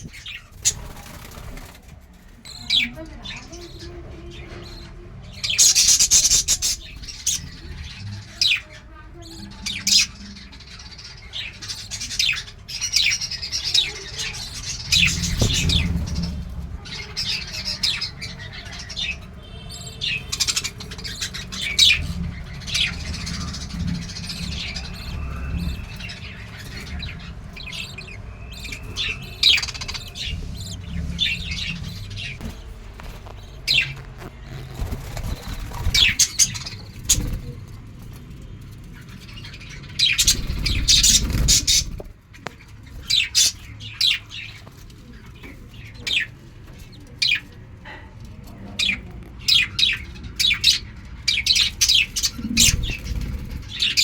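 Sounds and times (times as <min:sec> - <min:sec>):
lovebirds chirping: 0:00.0 - 0:54.0
low rumble: 0:13.5 - 0:19.1, 0:20.3 - 0:42.2.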